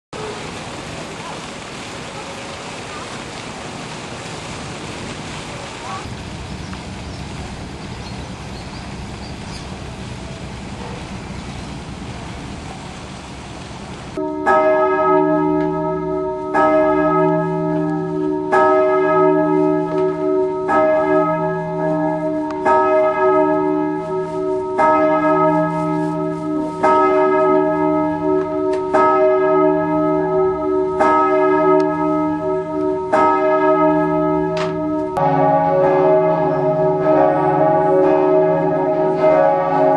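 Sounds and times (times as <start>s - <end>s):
tower bells ringing: 14.2s - 39.9s.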